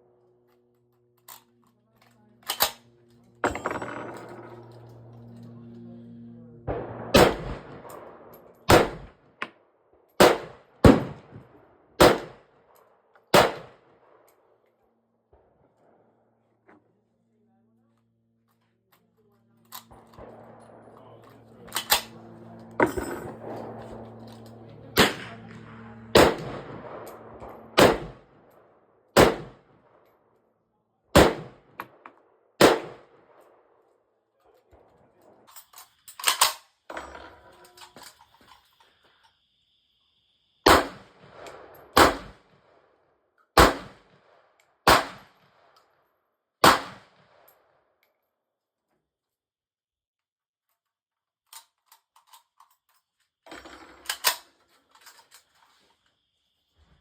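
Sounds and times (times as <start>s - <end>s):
single gunshots: 6.7s - 9.2s, 10.2s - 12.4s, 13.3s - 13.8s, 19.9s - 28.5s, 29.2s - 29.7s, 31.2s - 32.0s, 32.6s - 33.2s, 40.6s - 42.4s, 43.6s - 44.1s, 44.9s - 45.4s, 46.6s - 47.3s.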